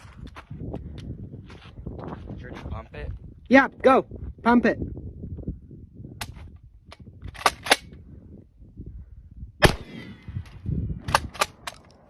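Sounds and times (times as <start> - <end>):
shotgun blast: 9.6 - 10.4.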